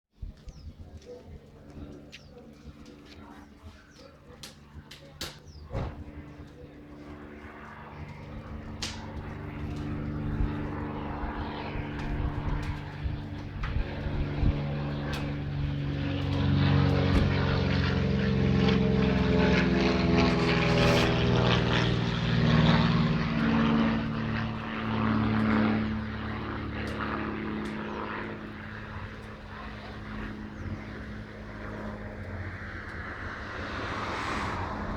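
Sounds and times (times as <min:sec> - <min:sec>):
propeller airplane flying over: 0:00.1 - 0:34.9.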